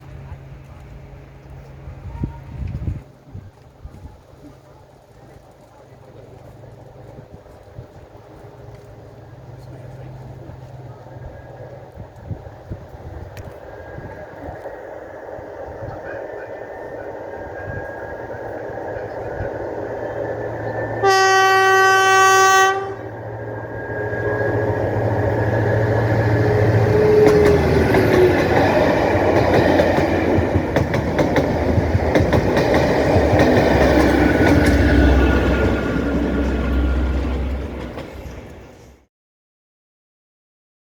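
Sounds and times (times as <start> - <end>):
locomotive engine and wheels: 0.0 - 39.1
locomotive horn blast: 21.0 - 23.2.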